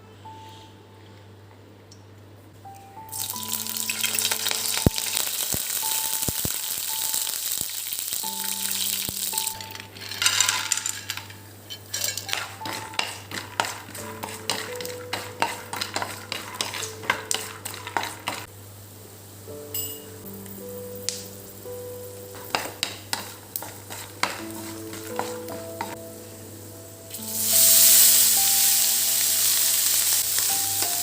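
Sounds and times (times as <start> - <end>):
soft background music: 0.0 - 31.0
food sizzling in hot oil: 3.1 - 10.9, 11.8 - 18.5, 19.2 - 26.0, 27.1 - 31.0
utensil clinking in pan: 8.6 - 18.5, 19.7 - 20.2.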